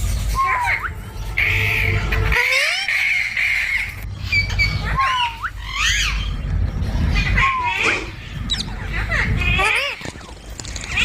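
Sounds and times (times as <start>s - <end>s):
parrot calling: 0.3s - 6.4s.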